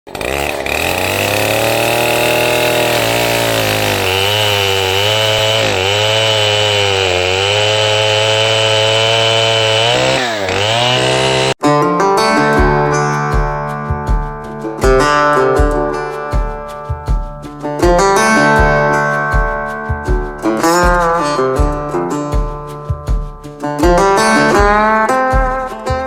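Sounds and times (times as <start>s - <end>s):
chainsaw running hard: 0.1s - 11.6s
acoustic guitar music: 1.4s - 6.8s, 10.7s - 26.0s.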